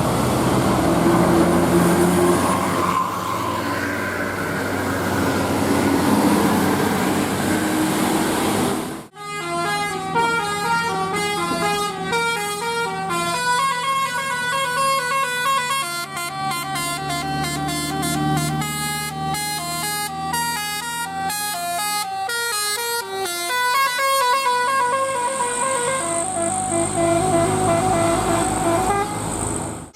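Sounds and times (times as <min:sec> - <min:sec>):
bus and road noise: 0:00.0 - 0:29.9
bus horn playing multi-tone tune: 0:09.0 - 0:29.9.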